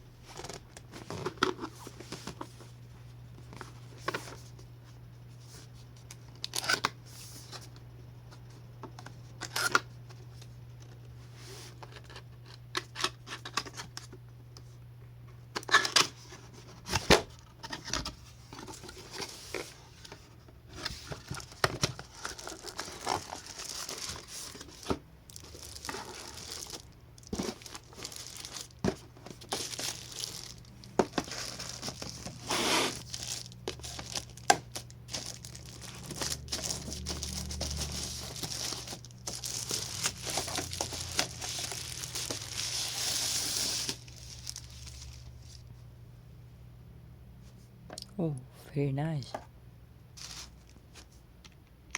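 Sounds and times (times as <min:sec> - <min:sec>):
packaging crinkling and tearing: 0:06.2 - 0:07.0, 0:20.8 - 0:45.7, 0:50.2 - 0:50.8.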